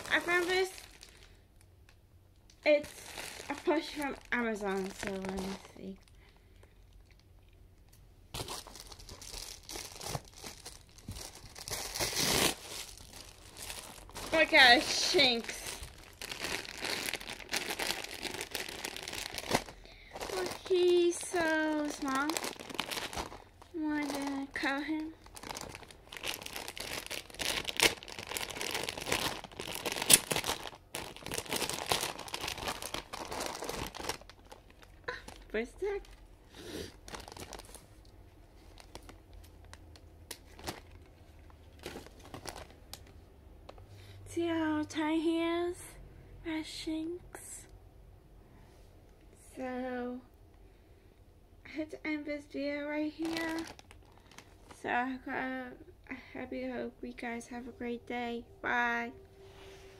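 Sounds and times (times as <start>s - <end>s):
plastic packaging crinkling: 0.0s - 1.7s, 2.4s - 36.3s, 36.9s - 43.2s, 53.0s - 54.9s
package being torn open: 8.4s - 14.4s, 25.3s - 35.4s.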